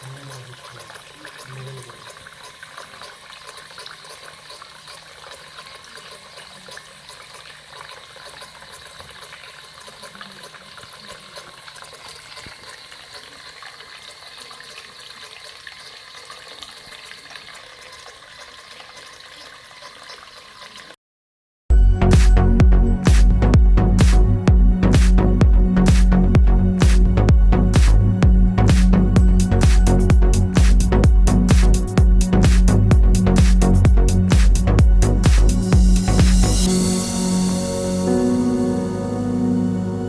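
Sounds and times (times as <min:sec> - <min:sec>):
water trickling and splashing: 0:00.0 - 0:21.0, 0:28.7 - 0:37.1.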